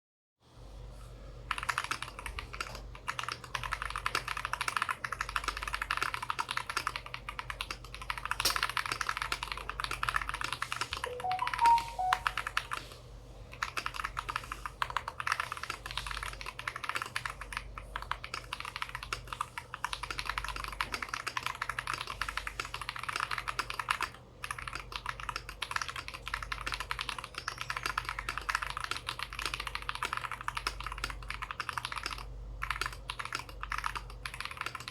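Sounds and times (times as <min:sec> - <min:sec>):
mechanical keyboard typing: 0:01.5 - 0:12.9, 0:13.5 - 0:34.9
three-note rising tone: 0:11.1 - 0:12.5.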